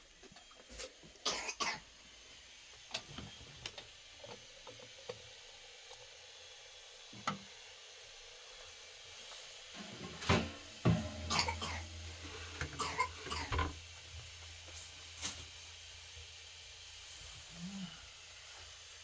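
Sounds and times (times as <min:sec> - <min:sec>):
person coughing: 0:11.0 - 0:13.7.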